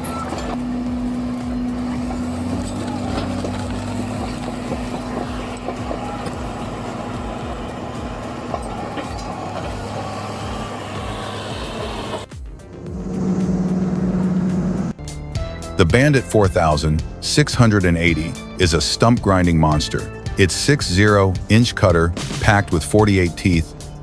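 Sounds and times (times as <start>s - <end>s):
heavy machine engine running: 0.0s - 15.0s.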